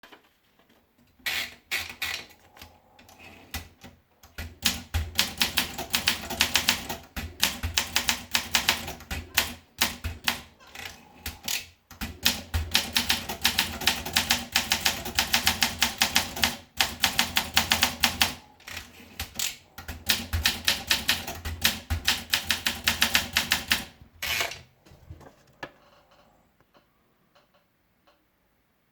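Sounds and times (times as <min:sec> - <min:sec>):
typewriter keystrokes: 0:03.5 - 0:10.5, 0:11.2 - 0:24.5.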